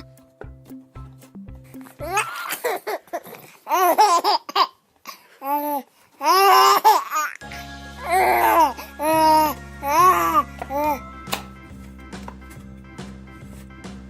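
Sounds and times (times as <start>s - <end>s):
background music: 0.0s - 2.5s, 7.4s - 14.0s
baby-like babbling and giggling: 1.8s - 7.4s, 8.0s - 11.0s.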